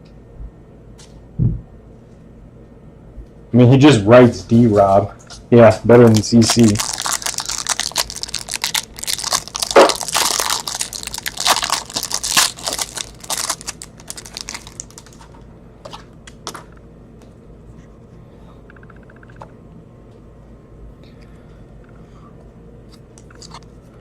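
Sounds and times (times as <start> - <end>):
wrapper crinkling and tearing: 6.0 - 15.4.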